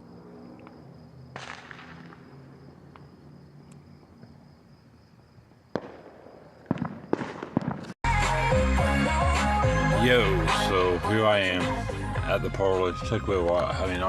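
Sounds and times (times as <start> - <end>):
high insect trill: 0.0 - 7.2
faint fireworks popping: 1.4 - 3.2, 5.7 - 8.0.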